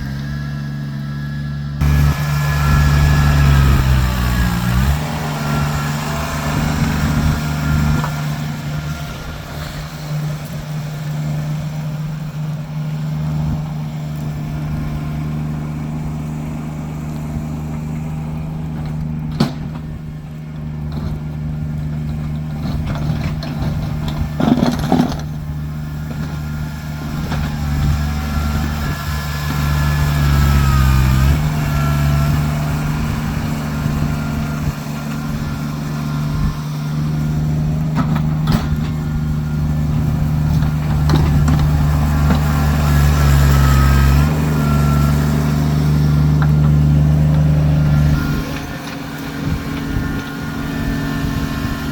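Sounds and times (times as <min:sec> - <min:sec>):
tractor diesel engine running: 0:00.0 - 0:51.9
short clatter: 0:18.7 - 0:26.5.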